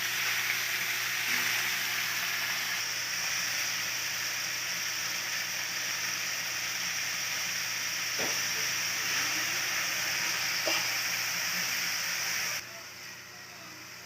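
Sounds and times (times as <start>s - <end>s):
food sizzling in a pan: 0.0s - 14.0s.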